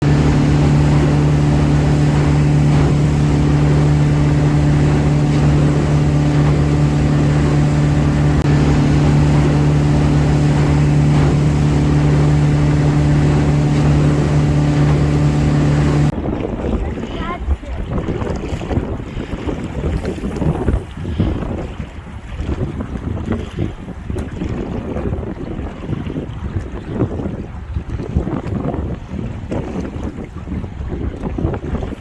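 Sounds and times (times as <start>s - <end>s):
boat motor droning: 0.0s - 16.1s
rushing water: 0.0s - 23.4s
wind noise: 0.0s - 32.0s.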